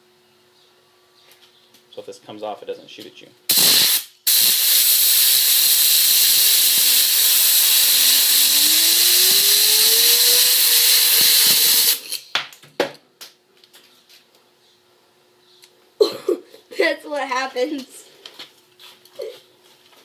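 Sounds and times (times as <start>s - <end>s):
compressed air hissing: 3.5s - 12.2s
fidget spinner whine: 3.6s - 12.3s.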